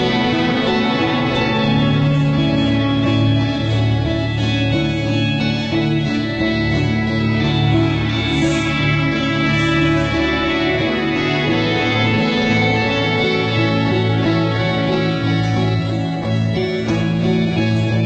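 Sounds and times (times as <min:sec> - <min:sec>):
guitar background music: 0:00.0 - 0:18.0.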